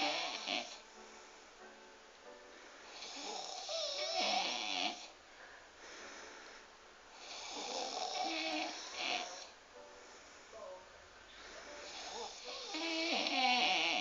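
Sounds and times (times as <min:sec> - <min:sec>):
man snoring heavily: 0:00.0 - 0:00.8, 0:03.0 - 0:05.1, 0:07.2 - 0:09.5, 0:11.8 - 0:14.0.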